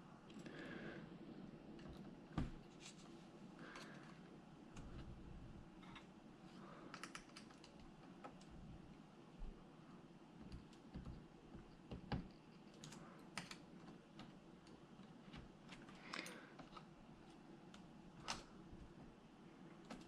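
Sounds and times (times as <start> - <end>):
small parts clicking and tapping: 6.9 - 8.6, 10.4 - 18.5.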